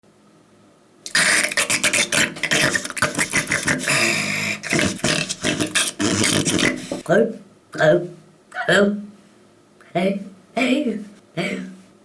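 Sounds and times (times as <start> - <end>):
man making mouth clicks and pops: 1.0 - 7.1.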